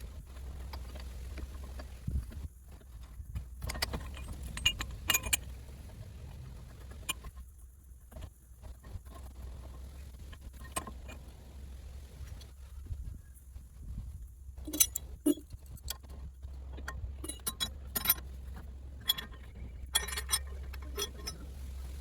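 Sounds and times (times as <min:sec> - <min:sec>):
steady low hum: 0:00.0 - 0:22.0
metallic clinks of hand tools: 0:14.6 - 0:16.0, 0:17.2 - 0:18.4, 0:19.0 - 0:21.8.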